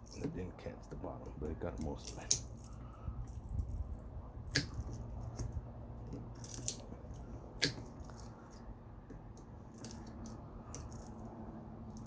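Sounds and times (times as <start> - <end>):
pliers snipping wire: 4.5 - 5.6.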